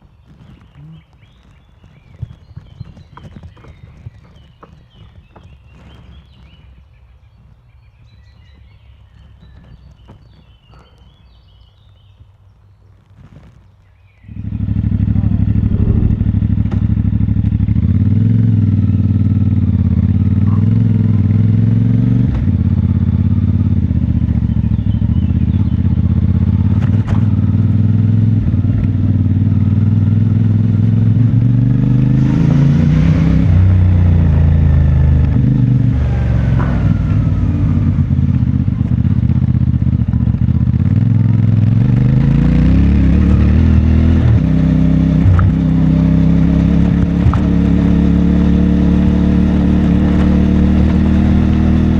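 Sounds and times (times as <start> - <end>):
motorcycle engine revving: 14.3 - 51.9.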